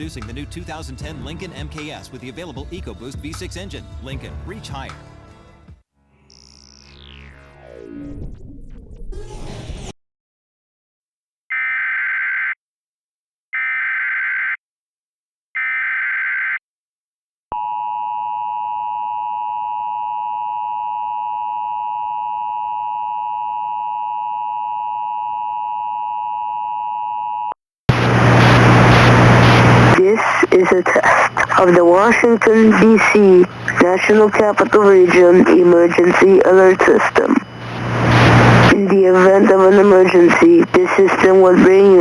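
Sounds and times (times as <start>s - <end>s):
loud hiss with low hum: 27.9s - 42.0s
warbling data tones: 27.9s - 42.0s.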